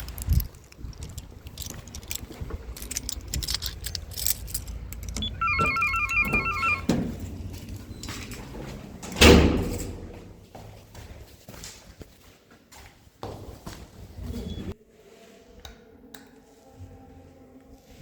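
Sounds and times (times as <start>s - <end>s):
heavy door banging shut: 4.4s - 10.3s
electronic beeping melody: 5.2s - 7.0s.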